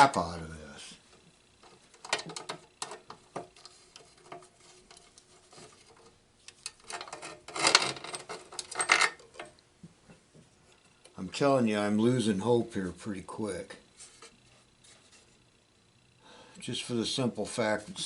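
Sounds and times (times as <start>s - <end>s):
clattering rattle: 1.6s - 9.6s.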